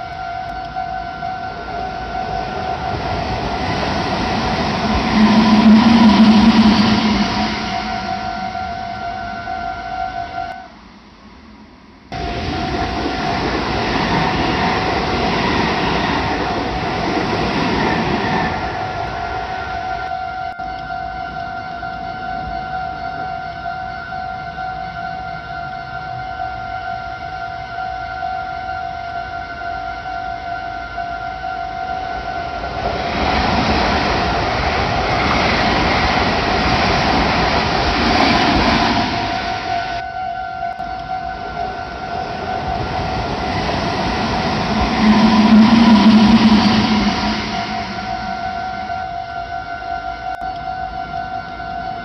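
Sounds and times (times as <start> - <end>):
train wheels rumbling on rails: 0.0 - 10.5, 11.6 - 20.2, 32.2 - 40.0, 40.7 - 49.4.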